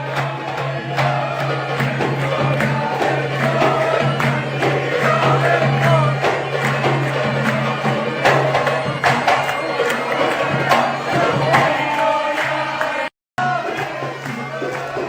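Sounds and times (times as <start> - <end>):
drumbeats: 0.0 - 15.0.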